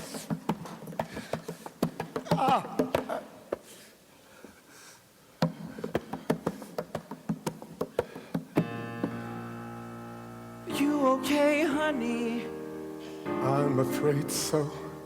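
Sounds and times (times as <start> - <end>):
sustained keyboard chord: 8.6 - 15.0.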